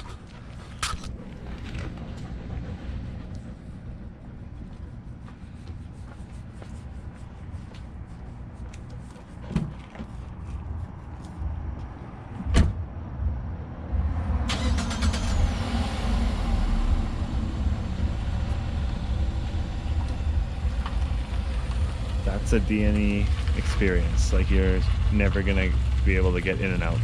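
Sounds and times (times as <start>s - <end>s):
car running: 0.0s - 5.7s, 8.6s - 27.0s
sharp thump: 12.5s - 12.8s.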